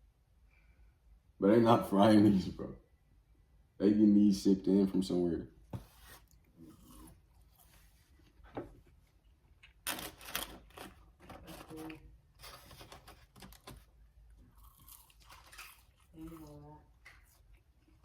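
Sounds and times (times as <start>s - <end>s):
soft chewing: 6.2s - 9.8s, 13.5s - 18.0s
food wrapper rustling: 9.6s - 17.6s.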